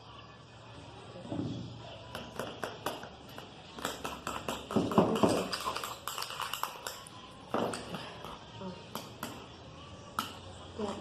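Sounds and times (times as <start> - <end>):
spoon clicking against container: 3.8 - 7.1.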